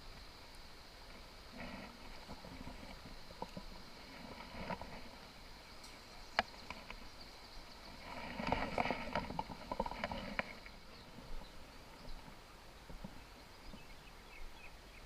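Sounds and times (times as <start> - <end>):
clicks rattles and rustling: 8.1 - 10.8.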